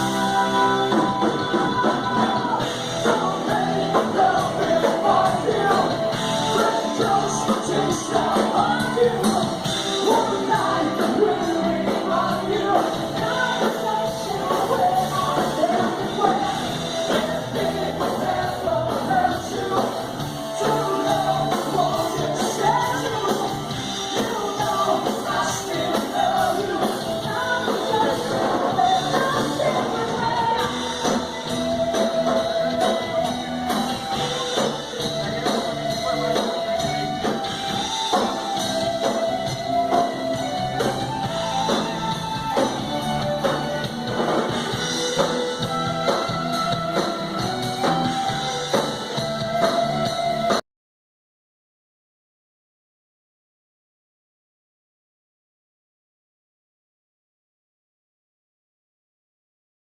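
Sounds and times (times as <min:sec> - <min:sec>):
person singing: 0:00.0 - 0:44.1
rock and roll band playing: 0:00.0 - 0:50.6.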